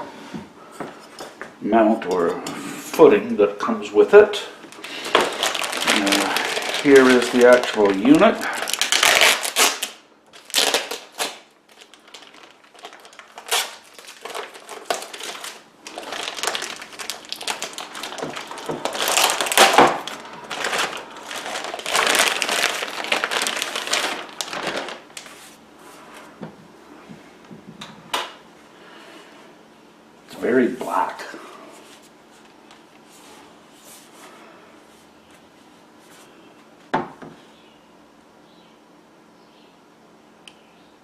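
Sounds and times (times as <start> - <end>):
packaging rustling and crinkling: 4.6 - 25.7.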